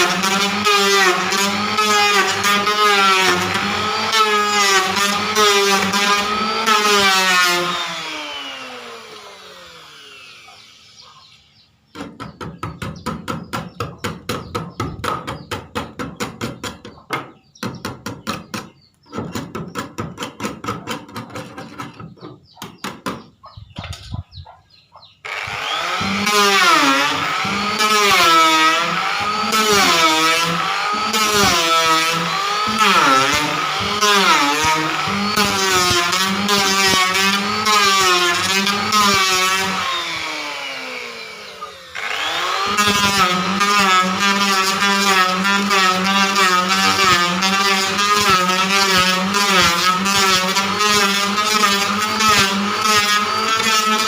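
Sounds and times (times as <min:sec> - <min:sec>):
electric planer motor: 0:00.0 - 0:11.4, 0:25.2 - 0:54.0.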